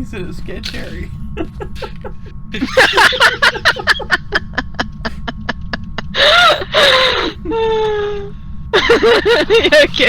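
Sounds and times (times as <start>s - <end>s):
person laughing hard: 1.4s - 8.1s, 8.8s - 9.8s.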